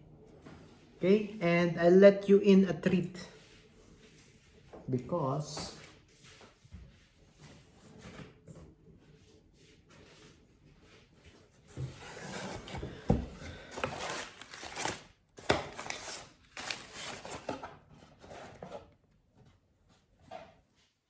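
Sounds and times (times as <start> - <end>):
packaging rustling and scraping: 9.8 - 19.0.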